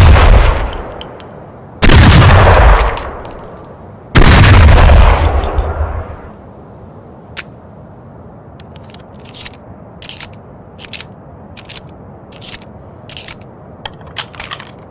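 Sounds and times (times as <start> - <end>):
shotgun action clicks and scrapes: 8.6 - 14.9.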